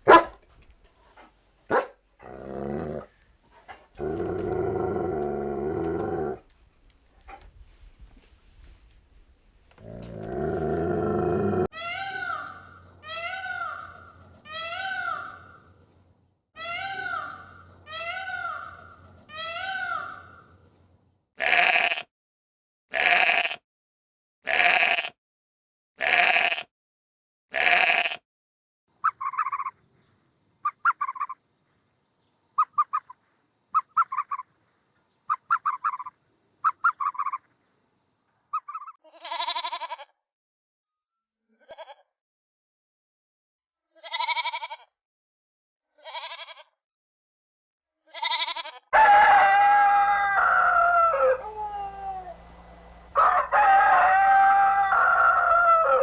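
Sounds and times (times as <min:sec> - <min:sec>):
harsh animal calls: 0:01.8 - 0:03.2, 0:04.0 - 0:06.4, 0:09.8 - 0:15.5, 0:48.2 - 0:56.0
pitched animal calls: 0:04.0 - 0:06.4, 0:48.2 - 0:53.5.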